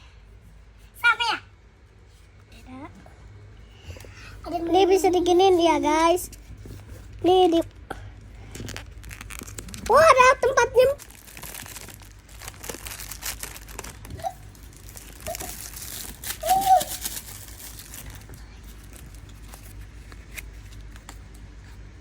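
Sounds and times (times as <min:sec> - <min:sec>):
paper and packaging rustling: 0:08.3 - 0:21.9.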